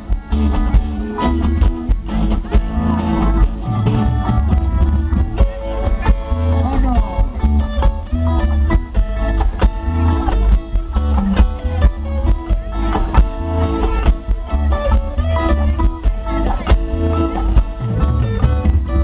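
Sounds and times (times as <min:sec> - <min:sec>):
music with heavy bass beat: 0:00.0 - 0:19.0
plucked-string melody: 0:00.0 - 0:19.0.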